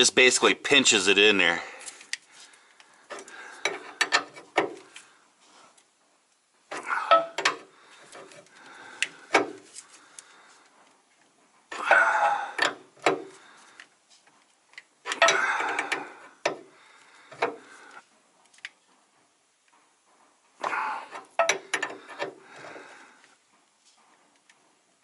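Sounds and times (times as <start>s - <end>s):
wrench clicking and scraping: 3.1s - 5.0s.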